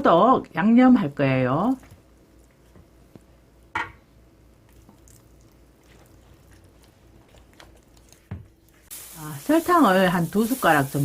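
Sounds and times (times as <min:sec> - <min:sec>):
wet paste squishing: 0:04.7 - 0:08.8.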